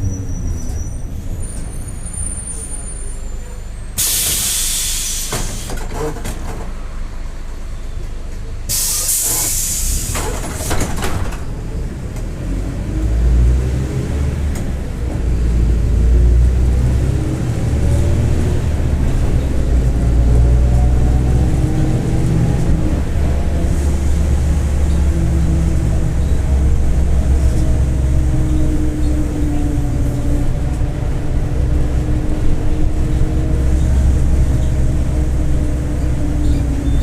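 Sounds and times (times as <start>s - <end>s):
diesel bus engine pulling away: 0.0s - 37.0s
compressed air hiss: 4.0s - 5.7s, 8.7s - 10.2s.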